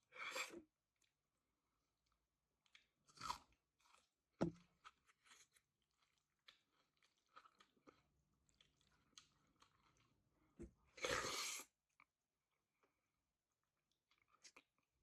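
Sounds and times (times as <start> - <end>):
person chewing crunchy food: 2.7 - 10.2.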